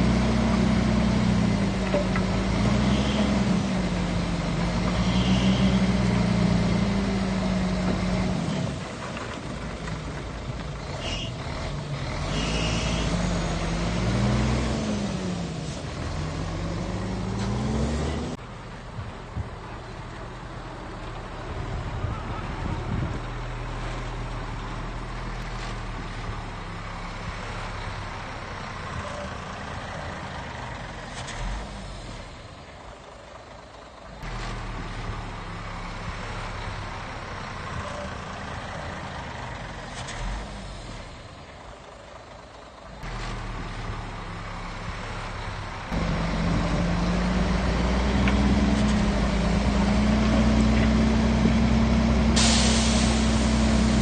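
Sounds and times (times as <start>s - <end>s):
heavy diesel engines running: 0.0s - 54.0s
air brake hiss: 52.4s - 53.7s.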